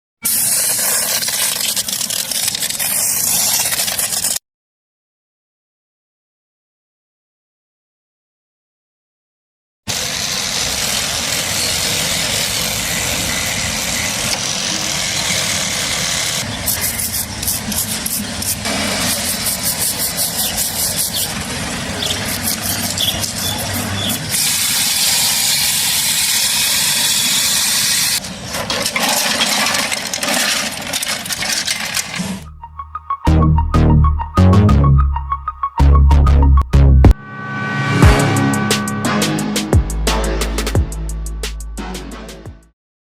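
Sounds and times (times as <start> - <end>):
small motor running noisily: 9.9 - 28.2.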